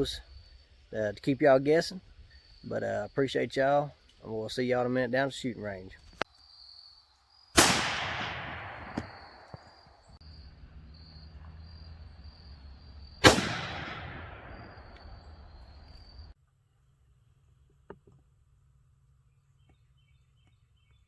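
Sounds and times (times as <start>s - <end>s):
rifle shots with echo: 7.6s - 9.5s, 13.2s - 15.0s.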